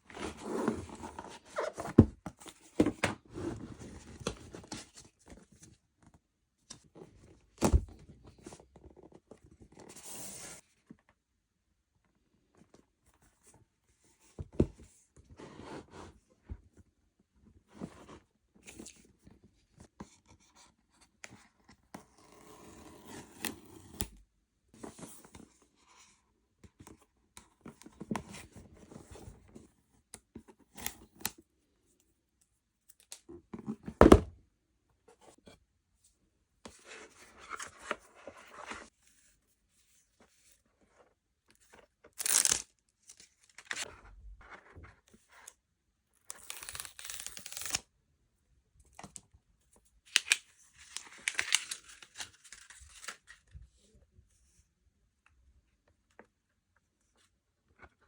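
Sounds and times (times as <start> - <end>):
packaging tearing and rustling: 42.2 - 42.7, 50.1 - 53.4.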